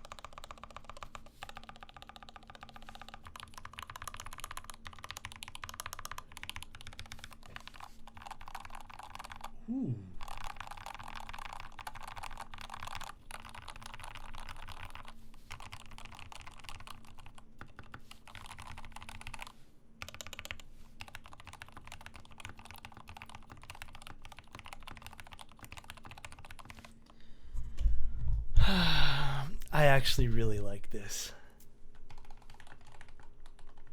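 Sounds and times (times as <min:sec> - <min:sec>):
mechanical keyboard typing: 0:00.0 - 0:09.5, 0:10.2 - 0:27.0, 0:32.0 - 0:33.9.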